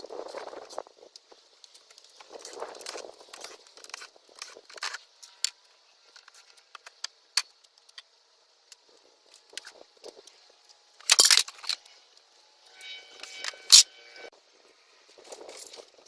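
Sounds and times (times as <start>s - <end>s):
hardware and tools rattling: 11.0s - 12.0s, 12.7s - 14.2s.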